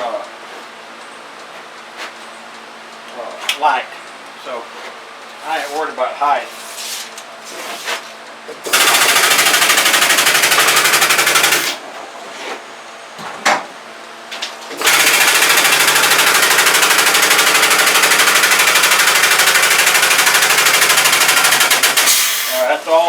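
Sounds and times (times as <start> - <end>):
electric hoist motor rattling: 8.2 - 12.1, 13.2 - 23.0.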